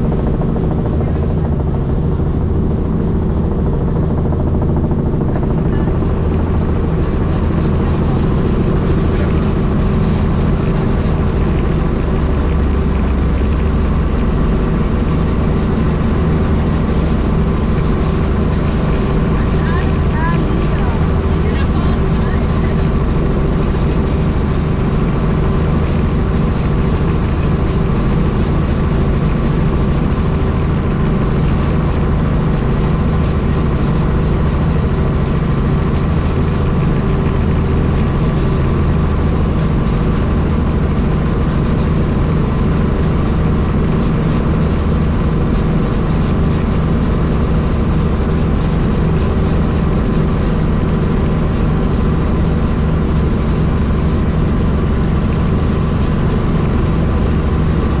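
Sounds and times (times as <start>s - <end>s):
helicopter rotor and engine: 0.0s - 58.0s.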